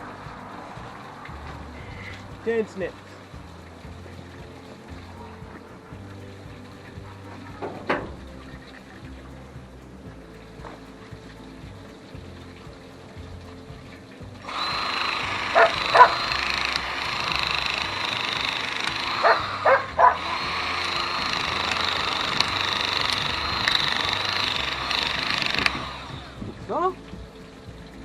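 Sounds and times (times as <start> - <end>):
power tool whining: 14.3 - 26.7
dog barking: 15.5 - 16.2, 19.2 - 20.3.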